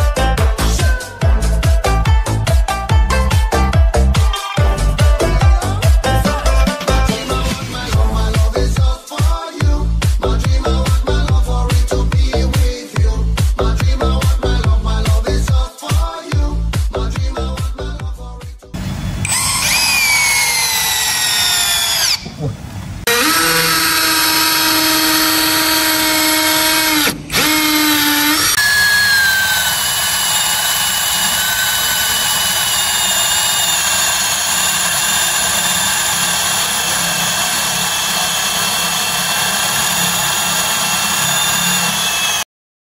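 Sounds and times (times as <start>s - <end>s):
cordless drill motor whine: 19.1s - 22.3s, 23.1s - 42.4s.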